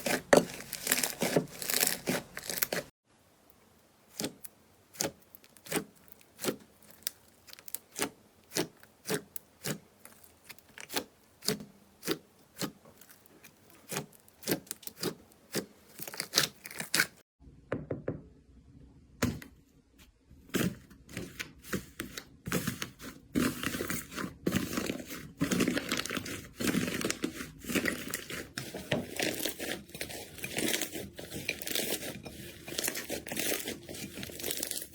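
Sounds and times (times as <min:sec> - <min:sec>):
crunchy slime crackling: 0:00.0 - 0:02.9, 0:04.1 - 0:17.2, 0:23.3 - 0:34.9.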